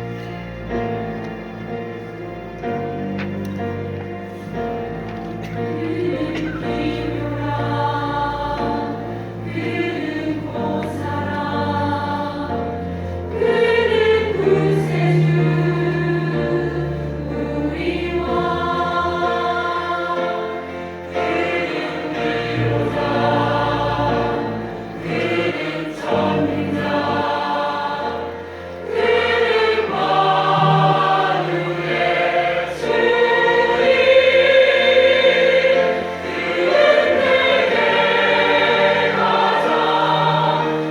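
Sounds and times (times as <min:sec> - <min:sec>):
church choir singing: 0:04.4 - 0:40.9.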